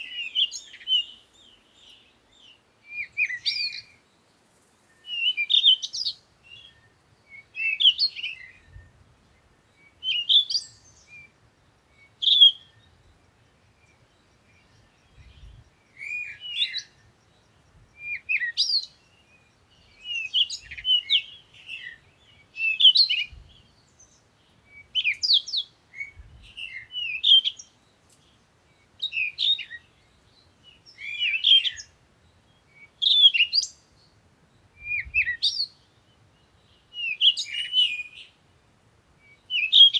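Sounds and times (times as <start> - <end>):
songbird chirping: 0.0 - 39.9.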